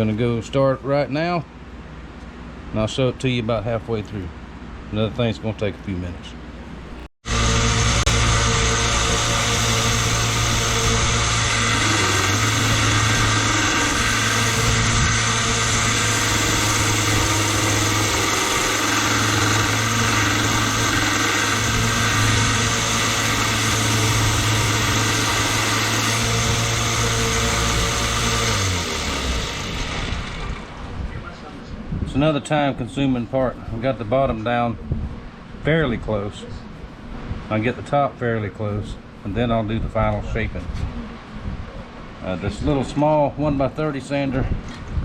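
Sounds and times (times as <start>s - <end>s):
belt sander grinding: 7.2s - 30.8s
sander winding down: 7.2s - 30.8s.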